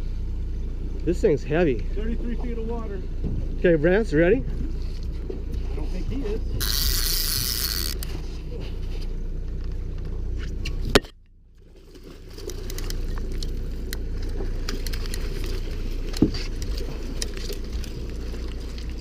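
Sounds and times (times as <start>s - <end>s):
boat motor running: 0.0s - 19.0s
small clicks and rattles: 12.4s - 19.0s.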